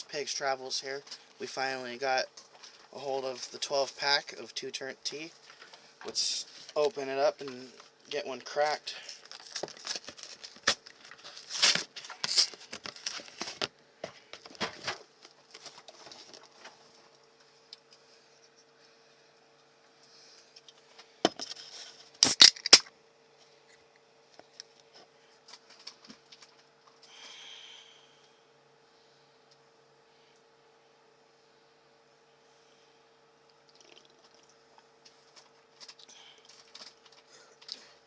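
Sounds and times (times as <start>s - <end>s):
cardboard rustling and tearing: 9.1s - 13.6s
drink can tab cracking open: 22.2s - 22.9s.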